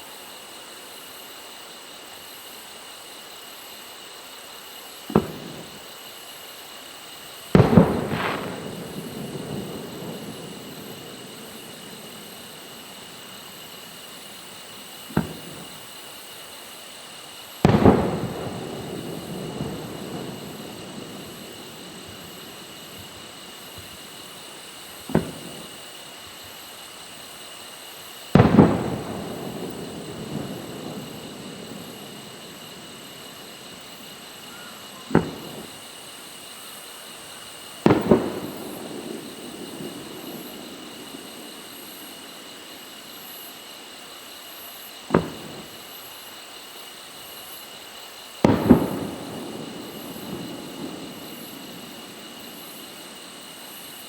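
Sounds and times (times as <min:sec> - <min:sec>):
firework sharp report: 0:04.7 - 0:54.0
firework boom with rolling echo: 0:05.1 - 0:06.0, 0:07.4 - 0:15.9, 0:17.6 - 0:26.0, 0:28.2 - 0:43.5, 0:45.1 - 0:45.8, 0:48.4 - 0:54.0.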